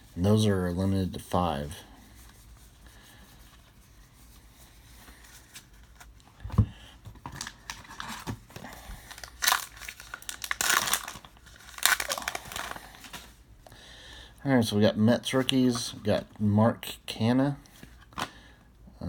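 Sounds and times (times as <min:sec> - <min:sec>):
wrapper tearing and crinkling: 0:07.4 - 0:13.3.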